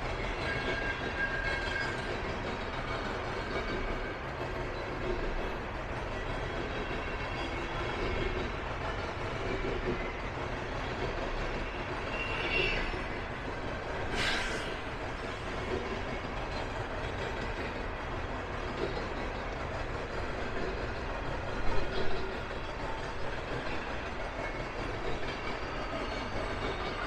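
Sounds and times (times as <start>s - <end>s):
train wheels rumbling on rail: 0.0s - 27.0s
high squeal: 11.8s - 13.3s
short sharp hiss: 14.1s - 14.8s.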